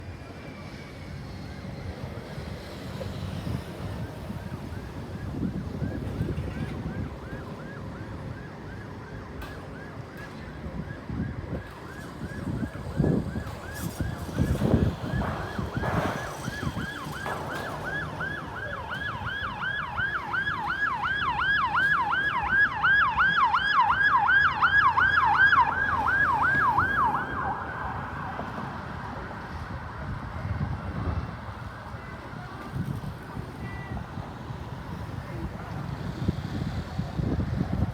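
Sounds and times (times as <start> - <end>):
road traffic rumble: 0.0 - 37.9
ambulance siren yelping: 3.8 - 28.8.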